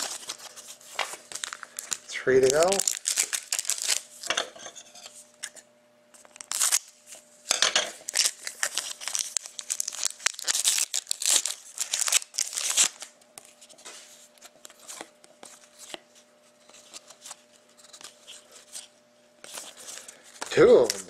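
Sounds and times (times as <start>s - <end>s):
cards rustling: 0.0s - 4.1s, 8.0s - 16.0s, 16.6s - 18.9s, 19.5s - 21.0s
foil wrapper tearing and crinkling: 0.0s - 4.3s, 6.2s - 7.1s, 8.0s - 13.1s.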